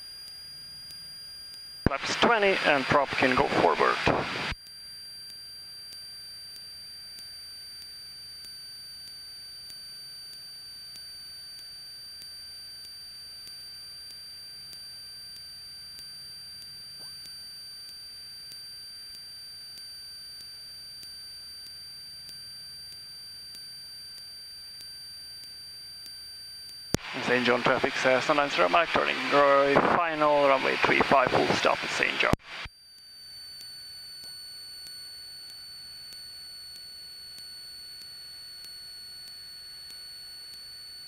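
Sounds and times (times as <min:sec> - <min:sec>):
high-pitched electrical whines: 0:00.0 - 0:41.0
intercom hiss: 0:01.9 - 0:04.5, 0:27.0 - 0:32.4.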